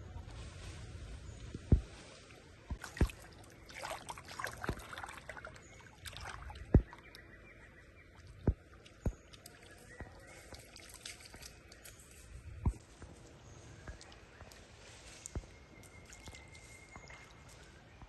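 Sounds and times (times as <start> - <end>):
water splashing in a pool: 2.6 - 11.9, 13.8 - 17.6.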